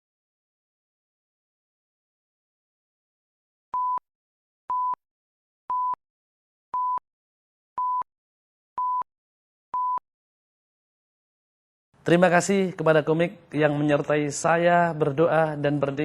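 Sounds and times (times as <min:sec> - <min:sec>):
short electronic beeps: 0:03.8 - 0:04.0, 0:07.8 - 0:08.1, 0:08.8 - 0:09.1, 0:09.8 - 0:10.0.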